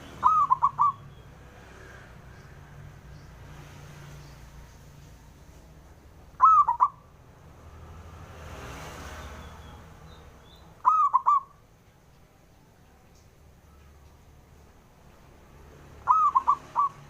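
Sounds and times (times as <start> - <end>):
dove cooing: 0.0 - 1.0, 6.4 - 7.0, 10.8 - 11.6, 16.0 - 17.0.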